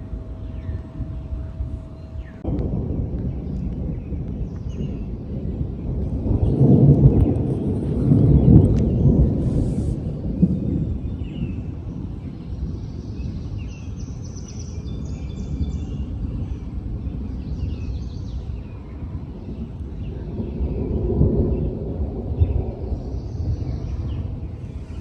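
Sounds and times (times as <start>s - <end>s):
birds chirping faintly: 0.0s - 25.0s
low rumble of thunder: 0.0s - 25.0s.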